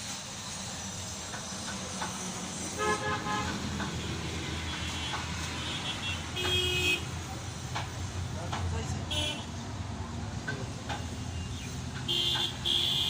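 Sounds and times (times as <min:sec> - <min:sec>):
vehicle horns tooting: 0:02.7 - 0:07.3, 0:09.1 - 0:09.6, 0:12.0 - 0:13.0.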